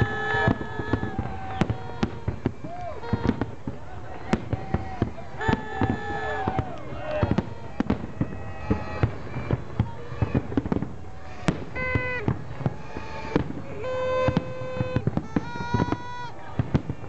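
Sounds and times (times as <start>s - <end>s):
fireworks bangs and crackles: 0.0s - 17.0s.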